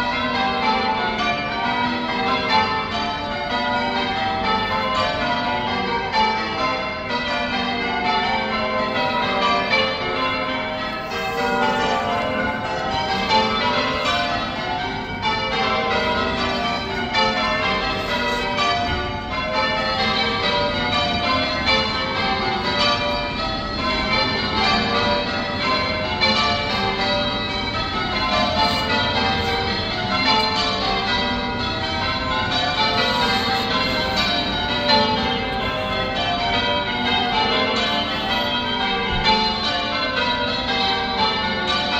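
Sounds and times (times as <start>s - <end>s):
church bells pealing: 0.0s - 41.9s.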